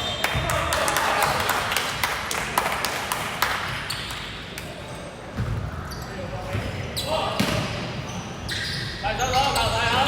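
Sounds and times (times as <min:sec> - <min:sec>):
shoes squeaking on court floor: 0:03.7 - 0:10.0.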